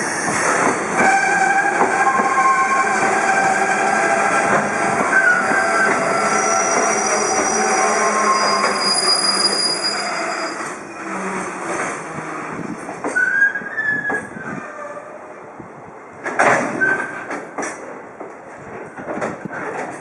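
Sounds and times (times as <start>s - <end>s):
train wheels squealing: 0.0s - 11.5s, 13.0s - 15.2s
wheels clacking over rail joints: 16.2s - 20.0s.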